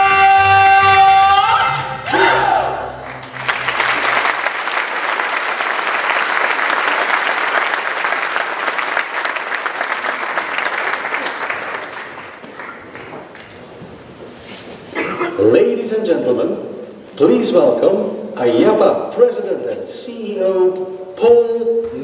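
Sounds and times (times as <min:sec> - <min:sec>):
audience applauding: 0:03.0 - 0:13.6.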